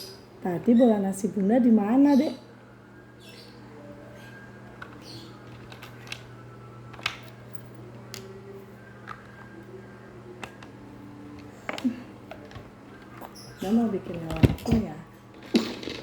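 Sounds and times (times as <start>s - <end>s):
steady low hum: 0.0s - 15.6s
plastic toys clicking on tabletop: 4.8s - 6.3s.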